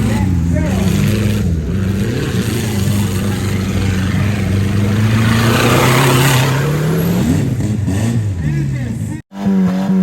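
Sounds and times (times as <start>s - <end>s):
vehicle engine running hard: 0.0s - 10.0s.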